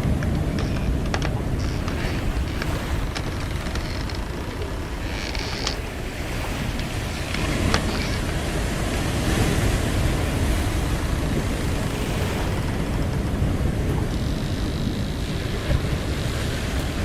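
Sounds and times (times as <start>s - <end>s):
wooden deck creaking: 0.0s - 8.6s, 10.8s - 16.5s
sea waves washing: 0.0s - 17.0s
wind: 0.0s - 17.0s.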